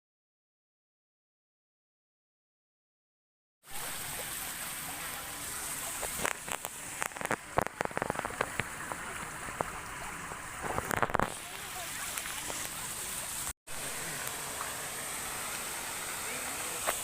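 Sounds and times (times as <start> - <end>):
fountain water hissing: 3.7 - 17.0
water splashes and drips: 3.7 - 17.0.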